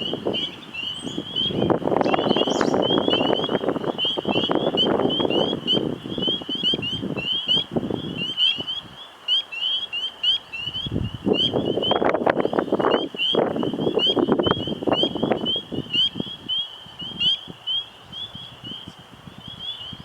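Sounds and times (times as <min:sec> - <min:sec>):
gusting wind: 0:00.0 - 0:20.0.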